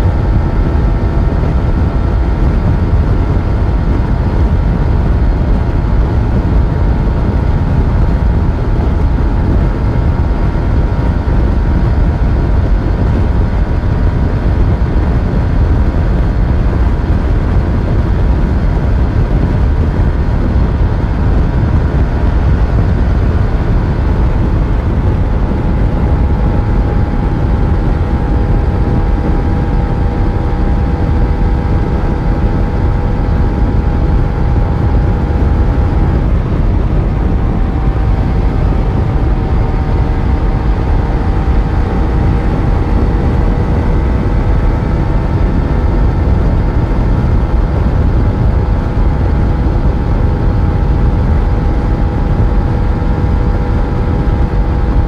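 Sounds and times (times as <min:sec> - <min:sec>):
motorcycle engine running: 0:00.0 - 0:55.0
wind and road noise rumble: 0:00.0 - 0:55.0.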